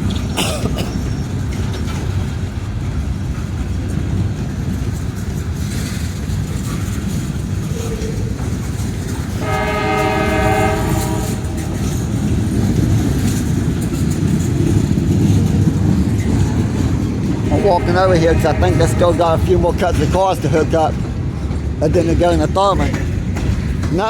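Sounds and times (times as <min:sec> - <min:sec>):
train rumbling on rails: 0:00.0 - 0:24.0
train horn: 0:09.3 - 0:13.0, 0:17.4 - 0:20.0.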